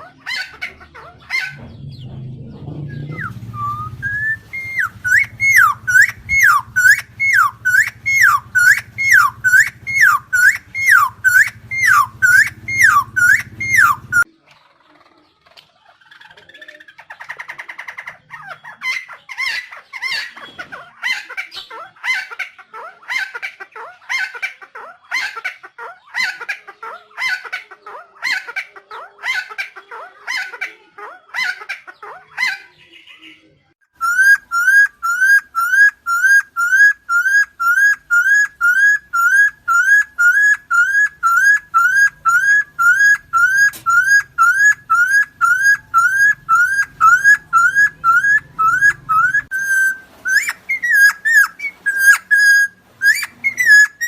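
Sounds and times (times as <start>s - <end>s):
bird harsh scratchy calls: 0.0s - 1.6s, 3.0s - 14.3s, 34.0s - 54.0s
loud rising whistled bird note: 1.5s - 14.3s.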